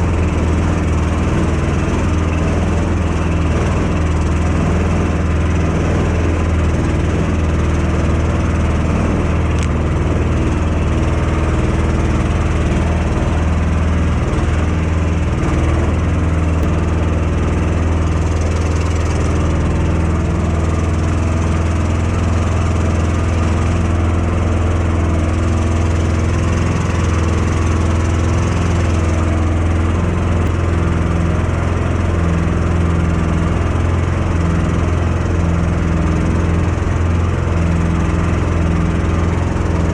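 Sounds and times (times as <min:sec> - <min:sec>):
vehicle engine droning: 0:00.0 - 0:39.9.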